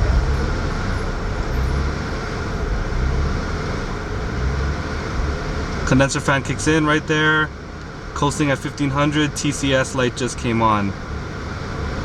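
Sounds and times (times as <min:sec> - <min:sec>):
car engine idling roughly: 0:00.0 - 0:12.0.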